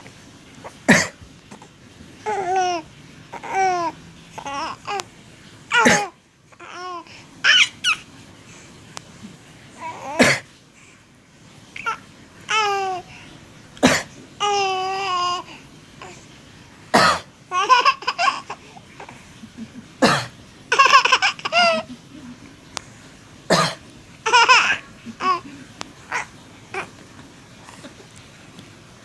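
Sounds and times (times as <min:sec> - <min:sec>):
man coughing: 0:00.9 - 0:01.2, 0:05.8 - 0:06.1, 0:13.8 - 0:14.1, 0:17.0 - 0:17.2, 0:20.0 - 0:20.3, 0:23.5 - 0:23.8
baby giggling: 0:05.7 - 0:08.0, 0:17.5 - 0:19.9, 0:20.7 - 0:22.4, 0:24.2 - 0:27.0.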